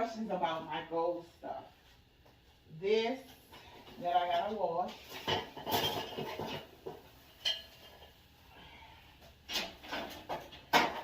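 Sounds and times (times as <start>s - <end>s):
kitchen utensils and dishes clattering: 3.6s - 8.2s, 9.5s - 11.0s.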